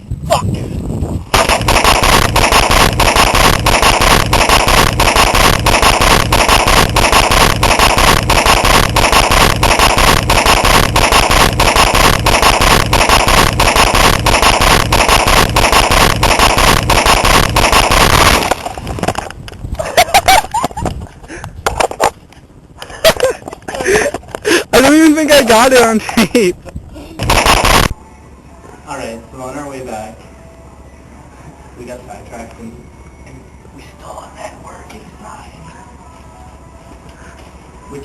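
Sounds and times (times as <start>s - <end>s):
firecrackers crackling: 1.3s - 20.6s, 27.2s - 28.0s.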